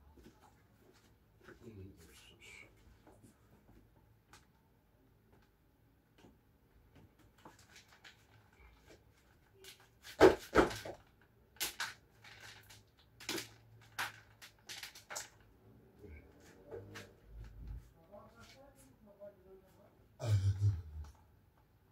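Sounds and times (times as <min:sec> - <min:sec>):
household knocks and clatters: 0:09.6 - 0:15.4.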